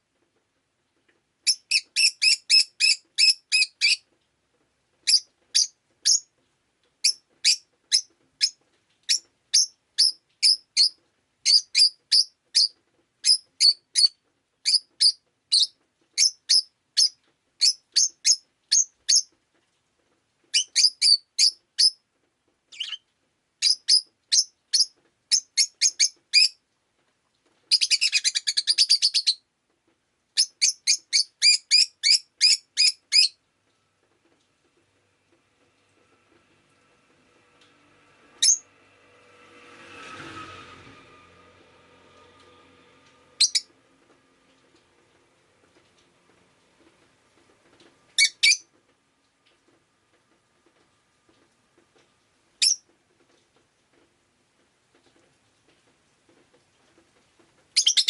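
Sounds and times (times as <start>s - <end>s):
lovebird chirping: 1.4s - 4.0s, 5.0s - 6.3s, 7.0s - 19.3s, 20.5s - 22.0s, 22.7s - 23.0s, 23.6s - 26.6s, 27.7s - 29.4s, 30.4s - 33.4s, 38.4s - 38.6s, 43.4s - 43.7s, 48.2s - 48.7s, 52.6s - 52.8s, 57.8s - 58.0s.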